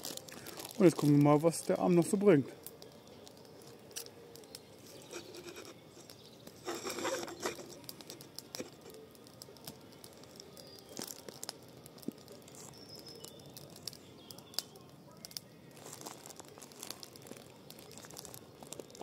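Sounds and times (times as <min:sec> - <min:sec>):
crunching rustle: 0:00.0 - 0:19.0
fire popping: 0:00.0 - 0:19.0
garden fire crackling: 0:00.0 - 0:19.0.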